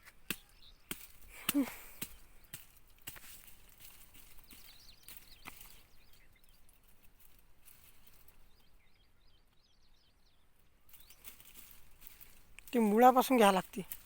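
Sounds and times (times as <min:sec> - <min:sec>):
faint bird chirps: 0:00.0 - 0:02.6, 0:04.1 - 0:13.6.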